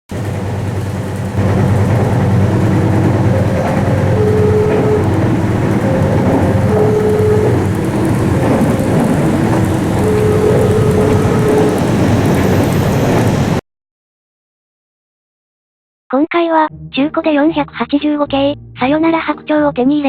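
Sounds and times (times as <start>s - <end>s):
model train rumbling hum: 0.1s - 13.6s
slow tune of short notes: 1.4s - 12.1s.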